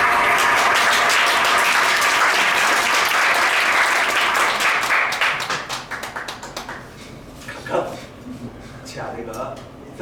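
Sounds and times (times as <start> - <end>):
audience applauding: 0.0 - 6.9.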